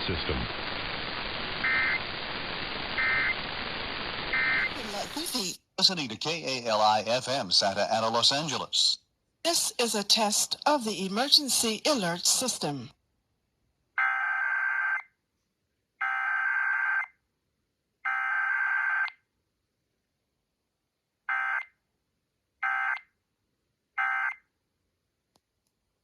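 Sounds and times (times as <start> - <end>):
buzzy warbling data bursts: 0.0 - 5.6.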